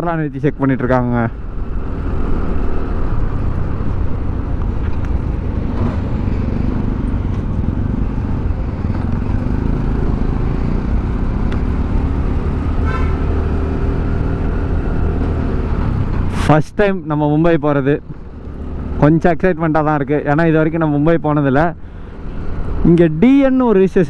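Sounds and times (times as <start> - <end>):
traffic road noise: 0.0 - 24.0
scooter engine: 1.3 - 16.2
distant horn: 12.6 - 13.6.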